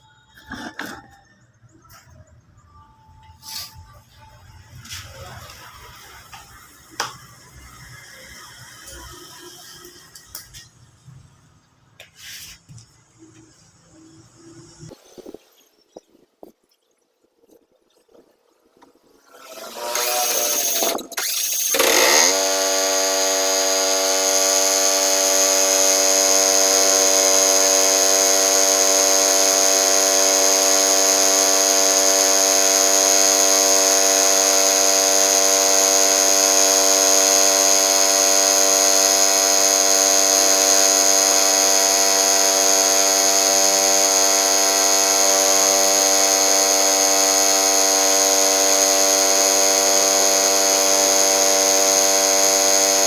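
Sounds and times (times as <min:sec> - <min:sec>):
motor buzzing whine: 0:19.2 - 0:53.0.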